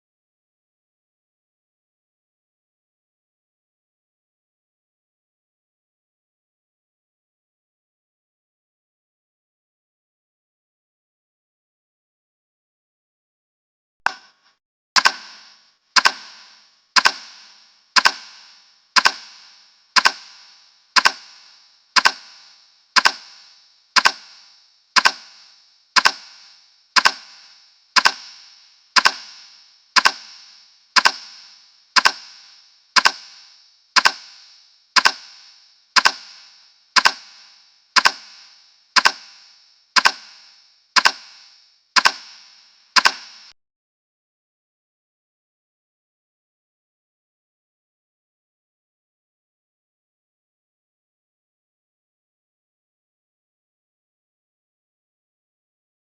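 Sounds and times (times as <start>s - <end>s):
timer ticking clicks: 15.0s - 43.6s.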